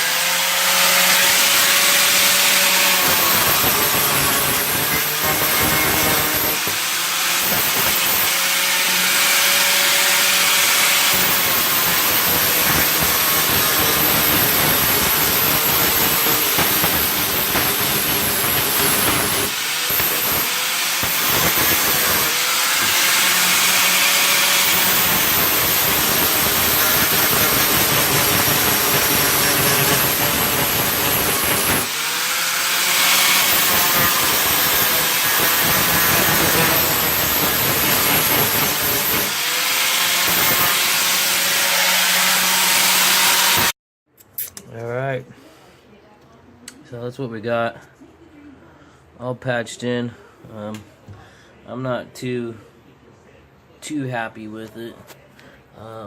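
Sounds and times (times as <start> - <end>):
electric grinder on sheet metal: 0.0 - 43.8.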